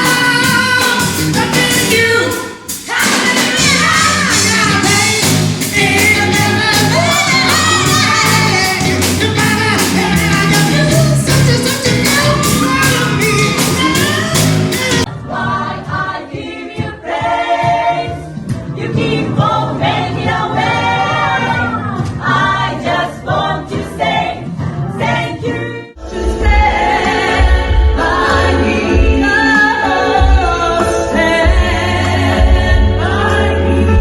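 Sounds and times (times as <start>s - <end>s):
full band with drum beat: 0.0s - 16.1s, 26.1s - 34.0s
layered choir-like vocals: 0.0s - 34.0s.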